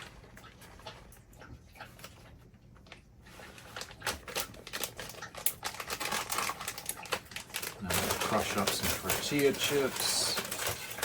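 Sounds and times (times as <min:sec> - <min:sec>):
tortilla chips crunching: 0:02.9 - 0:11.0.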